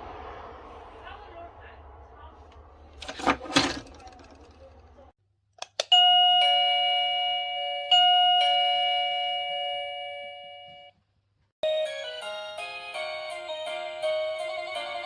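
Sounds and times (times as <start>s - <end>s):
doorbell ding-dong chime: 5.9s - 11.0s.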